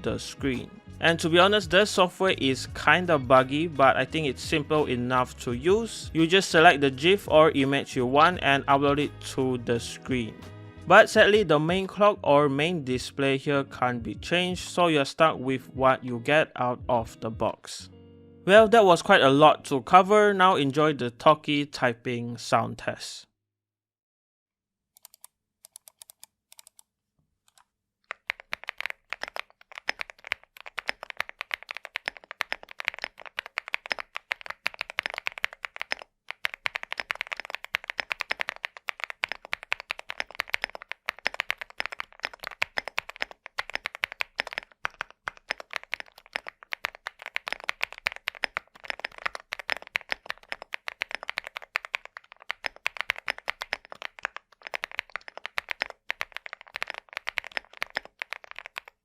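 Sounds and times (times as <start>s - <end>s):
typing on mechanical keyboard: 25.0s - 26.8s, 27.5s - 59.0s.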